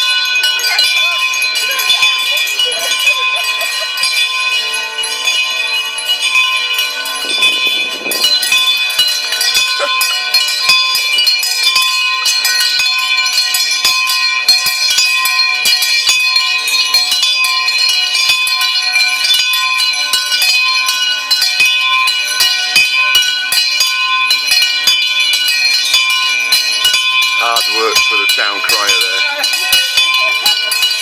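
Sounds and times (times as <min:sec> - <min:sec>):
many bells ringing fast: 0:00.0 - 0:31.0.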